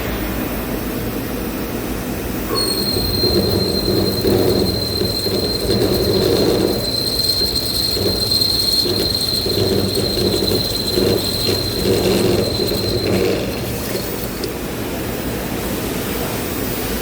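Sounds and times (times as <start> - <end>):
drilling machine whine: 2.5 - 14.8
machine rumble: 2.6 - 15.1.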